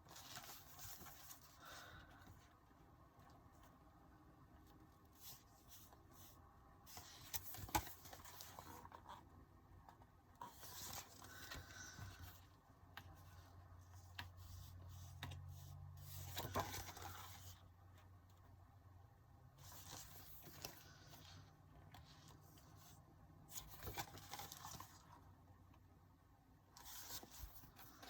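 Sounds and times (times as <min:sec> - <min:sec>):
paper rustling and scraping: 0:00.0 - 0:02.5, 0:10.4 - 0:17.6, 0:19.6 - 0:25.2, 0:26.8 - 0:28.0.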